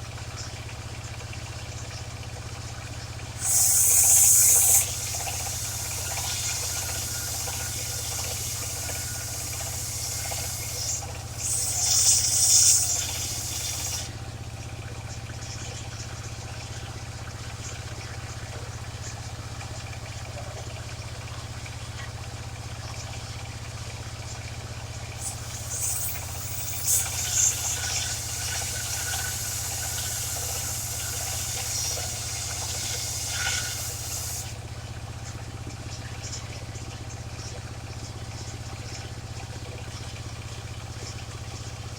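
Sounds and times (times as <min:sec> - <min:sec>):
sawmill engine running: 0:03.2 - 0:14.4, 0:24.9 - 0:34.7
saw blade cutting wood: 0:03.4 - 0:14.2, 0:25.2 - 0:34.6.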